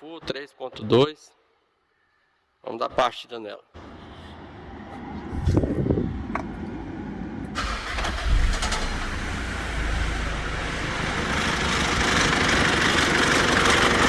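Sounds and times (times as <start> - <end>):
diesel engine idling: 3.8 - 14.0
diesel engine starter cranking: 6.2 - 14.0.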